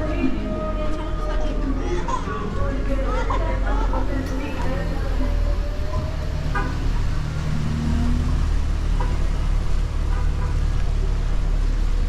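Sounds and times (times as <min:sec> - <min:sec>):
faint voices: 0:00.0 - 0:08.9
vehicle engine rumbling: 0:00.0 - 0:12.0.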